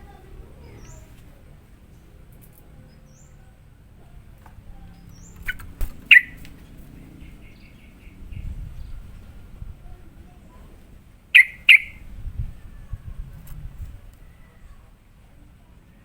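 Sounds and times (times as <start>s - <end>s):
faint bird chattering: 0.0s - 1.2s, 4.7s - 9.3s, 11.3s - 12.1s
bulbul chirps: 5.1s - 6.6s, 11.4s - 12.0s.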